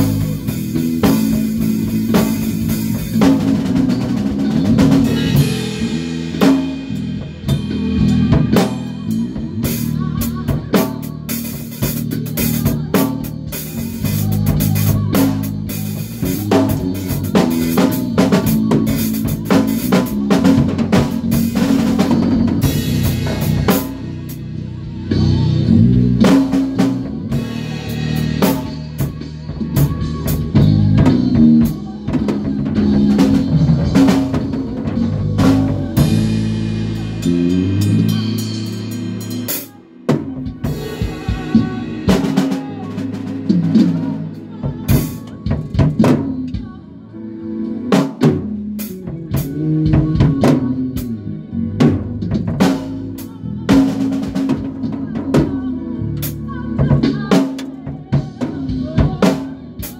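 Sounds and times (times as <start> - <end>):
drum kit playing a busy beat: 0.0 - 46.9, 47.6 - 59.9
bass guitar line: 0.0 - 59.9.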